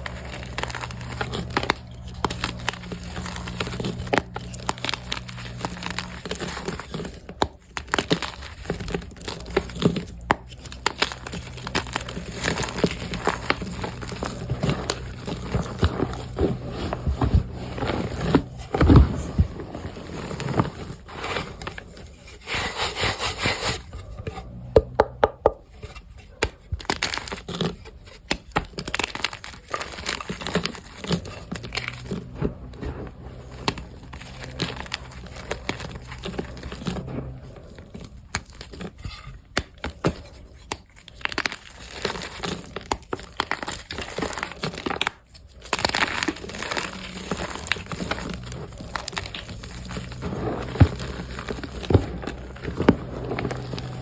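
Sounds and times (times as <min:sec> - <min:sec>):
gritty powder being worked: 0:00.0 - 0:54.0
chalk blocks crushed by hand: 0:38.2 - 0:54.0.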